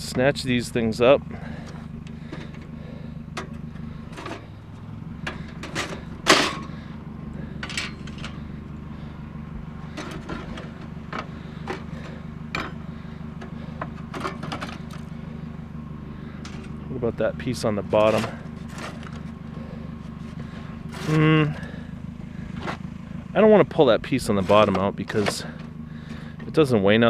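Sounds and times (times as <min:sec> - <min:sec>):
vehicle engine idling: 0:00.0 - 0:27.0
scrap metal clanking: 0:01.4 - 0:09.1, 0:09.8 - 0:15.5, 0:16.2 - 0:16.9, 0:17.6 - 0:21.8, 0:24.2 - 0:26.6.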